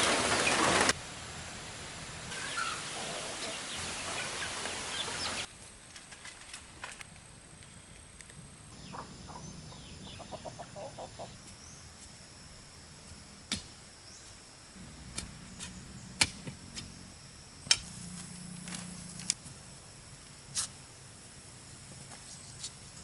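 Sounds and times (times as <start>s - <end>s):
insects droning: 0.0s - 23.0s
bird calls: 2.3s - 5.5s, 8.7s - 11.9s.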